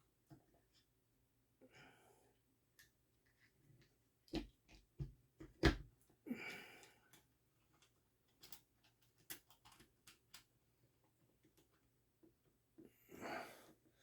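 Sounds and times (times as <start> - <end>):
gun parts clicking and knocking: 7.7 - 10.4.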